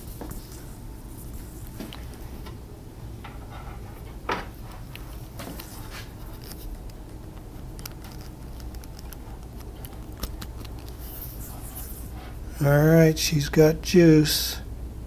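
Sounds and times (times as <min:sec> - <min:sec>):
steady low hum: 0:00.0 - 0:15.0
hands handling things clicking: 0:06.4 - 0:11.0.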